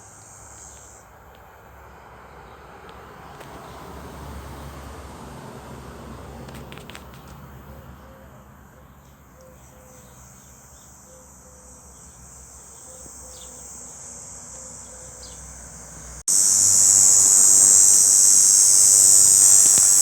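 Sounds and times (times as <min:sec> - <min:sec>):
cicada buzzing: 0:00.0 - 0:01.4, 0:09.6 - 0:20.0.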